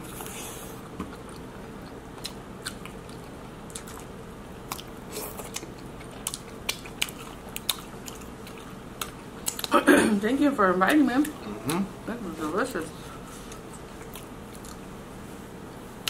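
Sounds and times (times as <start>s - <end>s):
wet chewing and biting: 0.9s - 9.7s, 13.5s - 14.8s.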